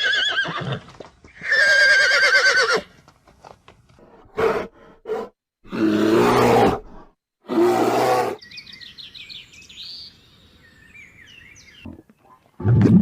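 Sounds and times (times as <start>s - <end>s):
birds chirping and trilling: 7.9s - 12.5s.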